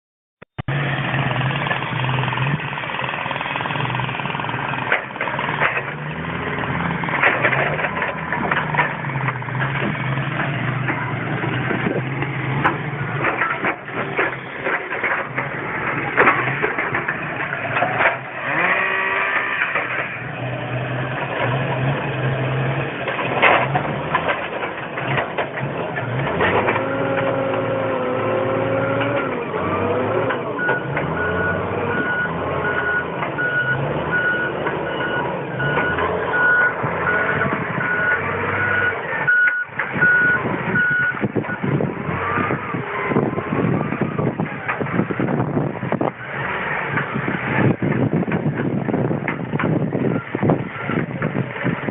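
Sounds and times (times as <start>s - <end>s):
diesel engine running: 0.6s - 51.9s
reversing alarm beeping: 30.6s - 41.6s.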